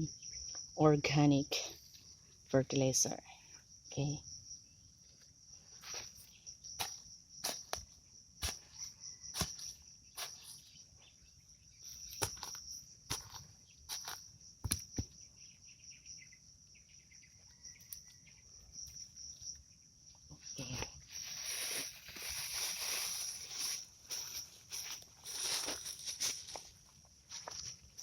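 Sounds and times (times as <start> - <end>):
high-pitched insect drone: 5.8 - 26.7.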